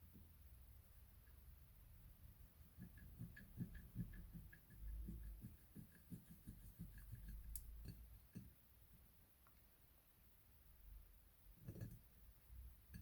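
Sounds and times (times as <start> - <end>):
hands tapping polymer clay: 2.6 - 9.0.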